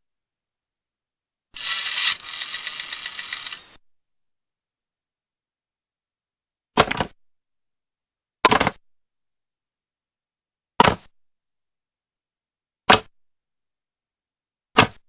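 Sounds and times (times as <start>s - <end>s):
rotary telephone mechanical clicks: 1.6s - 3.7s.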